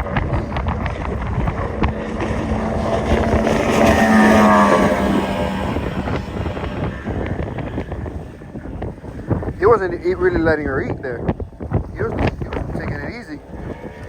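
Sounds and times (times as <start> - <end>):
powerboat engine running: 0.0 - 14.0
wind buffeting microphone: 0.0 - 14.0.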